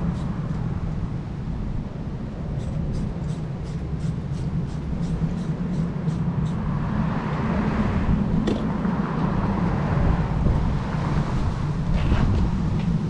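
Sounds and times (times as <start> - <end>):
car engine humming: 0.0 - 9.7.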